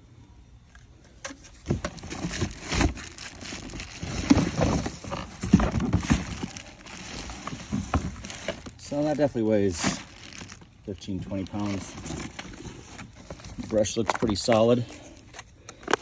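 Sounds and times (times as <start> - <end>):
cardboard box and plastic parts handled: 0.6 - 16.0.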